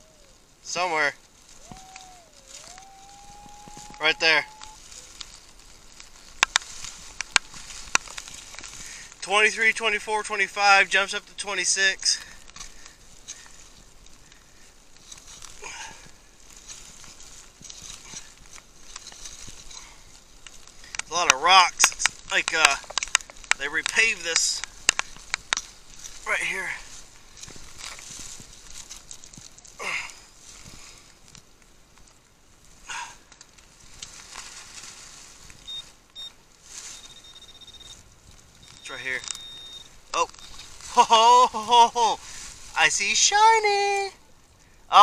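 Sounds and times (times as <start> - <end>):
rain hiss: 0.0 - 45.0
digging tool in rocky ground: 1.2 - 9.3, 12.2 - 32.2, 35.6 - 43.8
metal detector steady high tone: 1.7 - 4.8, 35.6 - 38.0, 38.6 - 40.7
metal detector beeps: 35.6 - 38.0, 38.6 - 40.7.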